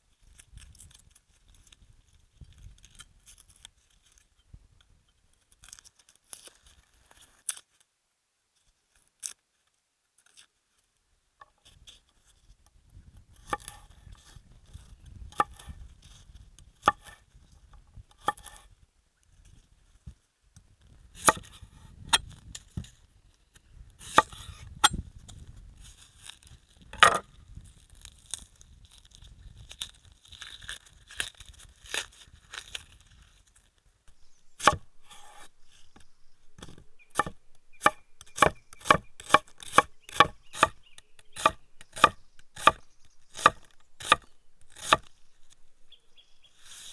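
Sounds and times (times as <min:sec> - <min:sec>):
tearing and crinkling: 0:05.5 - 0:07.8, 0:25.8 - 0:26.9, 0:27.5 - 0:36.9
sharp knocks: 0:34.6 - 0:34.9, 0:36.6 - 0:40.8.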